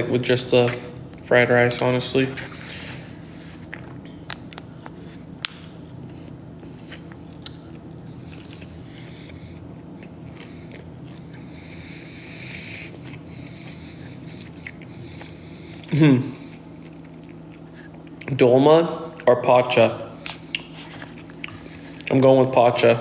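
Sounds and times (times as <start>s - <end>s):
steady low hum: 0.0s - 23.0s
person chewing close up: 3.6s - 18.4s, 20.2s - 22.2s.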